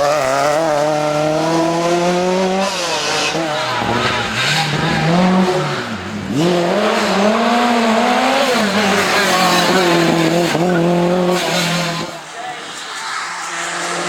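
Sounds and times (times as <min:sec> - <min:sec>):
rally car engine revving: 0:00.0 - 0:14.0.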